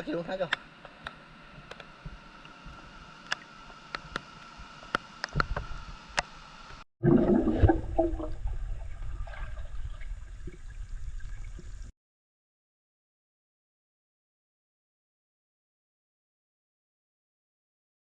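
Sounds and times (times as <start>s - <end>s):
water sloshing and gurgling: 1.4s - 11.9s.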